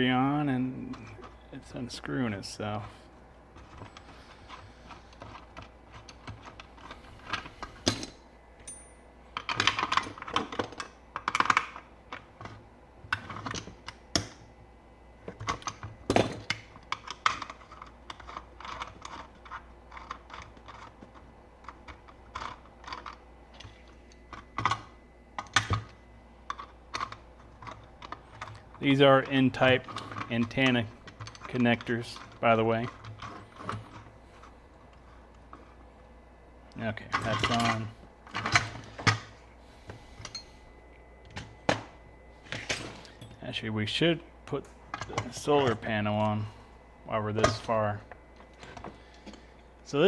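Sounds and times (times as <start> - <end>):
small hard parts clicking and knocking: 3.6 - 14.4, 15.2 - 35.6.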